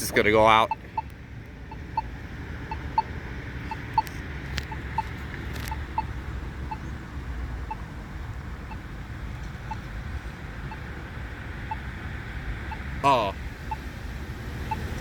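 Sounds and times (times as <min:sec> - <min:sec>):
pedestrian signal beeps: 0:00.0 - 0:06.9, 0:07.6 - 0:07.9, 0:12.7 - 0:13.9, 0:14.6 - 0:15.0
traffic rumble: 0:00.0 - 0:15.0.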